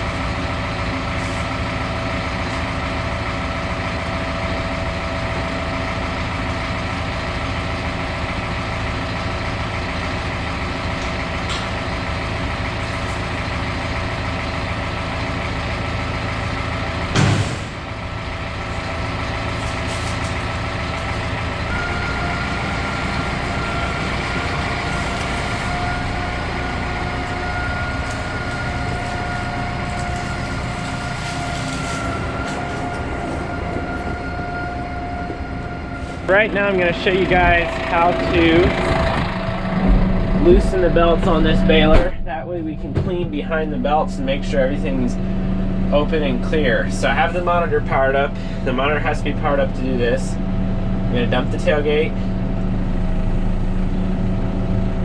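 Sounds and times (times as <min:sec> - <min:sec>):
engine running: 0:00.0 - 0:55.0
high whine: 0:17.6 - 0:55.0.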